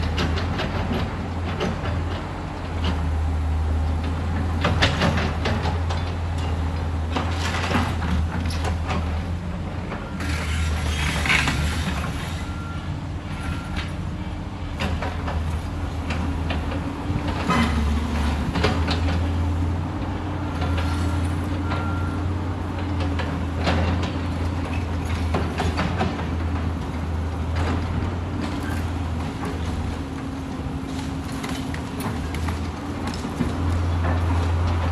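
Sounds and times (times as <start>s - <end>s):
excavator engine running: 0.0s - 34.9s.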